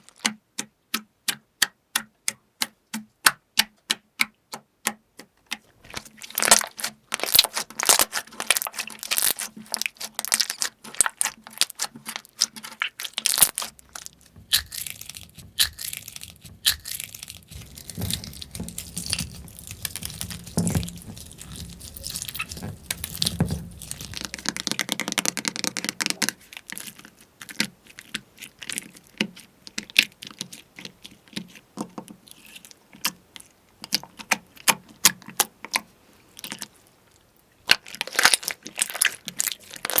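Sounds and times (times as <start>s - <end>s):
slime squishing: 5.3s - 35.8s, 37.7s - 40.0s
crunchy slime crackling and popping: 5.6s - 31.6s, 37.6s - 40.0s.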